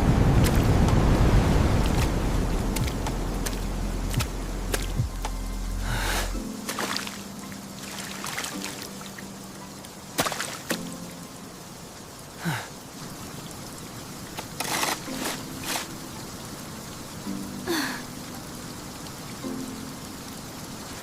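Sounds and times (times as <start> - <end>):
liquid trickling and pouring: 6.4 - 10.9, 14.2 - 16.3.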